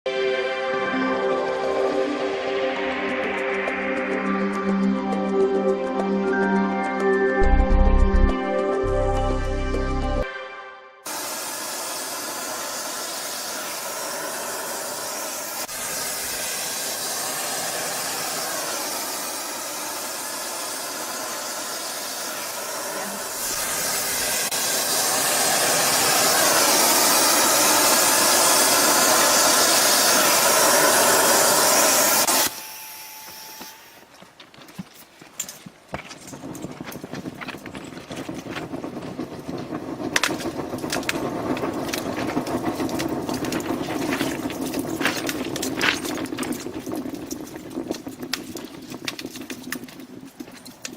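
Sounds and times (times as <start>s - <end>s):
loud steady hiss: 11.1s - 34.2s
scattered clicks and knocks: 33.3s - 50.9s.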